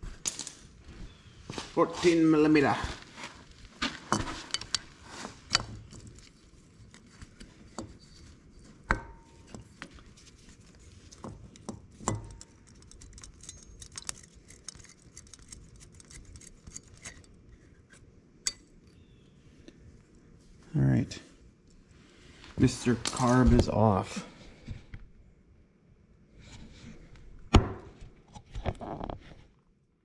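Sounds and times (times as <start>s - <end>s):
metal tools clicking and clinking: 11.2s - 17.4s.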